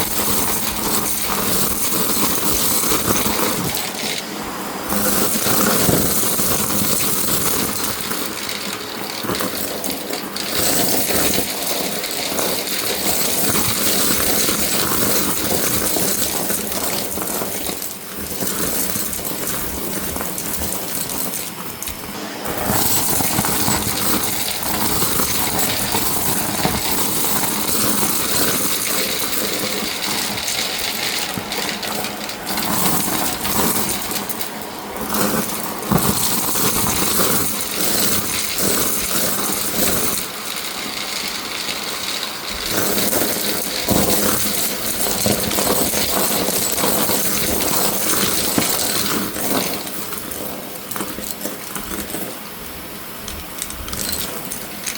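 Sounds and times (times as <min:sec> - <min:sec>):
debris rattling through nozzle: 0:00.0 - 0:54.9
vacuum cleaner motor: 0:00.0 - 0:54.9.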